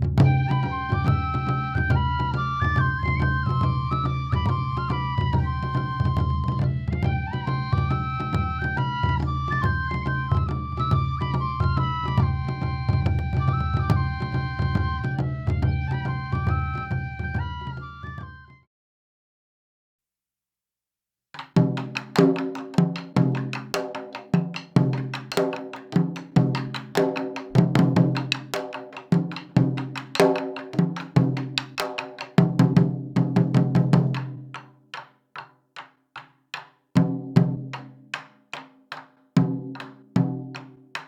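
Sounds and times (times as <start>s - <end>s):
taiko drums in fast rhythm: 11.9s - 15.5s, 21.4s - 41.0s.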